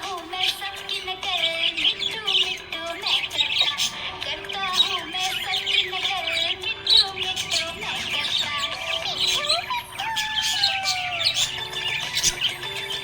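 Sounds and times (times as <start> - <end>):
budgerigar chirping: 0.0 - 13.0.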